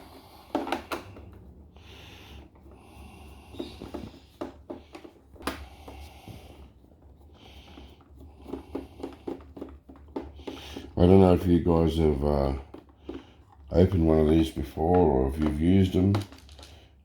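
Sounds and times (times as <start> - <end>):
hissy breaths: 0.0 - 11.0, 12.7 - 13.7.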